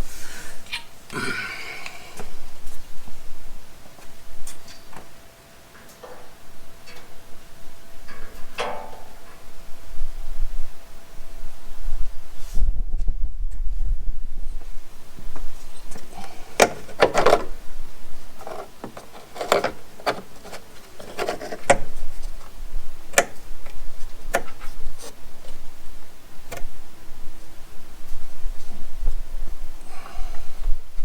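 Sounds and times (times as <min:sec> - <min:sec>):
knocks and clicks of tools: 0:16.6 - 0:17.5, 0:18.4 - 0:21.9.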